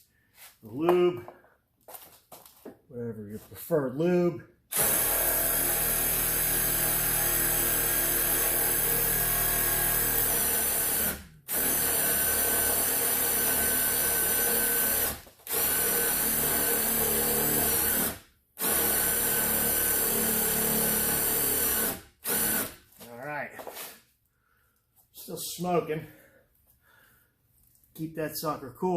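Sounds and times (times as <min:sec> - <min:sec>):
power drill spinning: 0:04.7 - 0:24.0.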